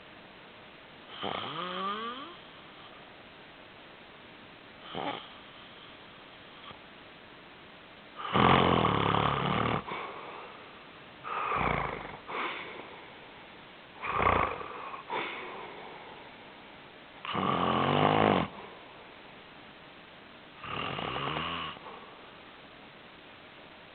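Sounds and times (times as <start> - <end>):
loud snoring: 1.1 - 2.4, 4.9 - 5.3, 8.2 - 10.0, 11.3 - 12.6, 14.0 - 15.4, 17.2 - 18.6, 20.6 - 21.9.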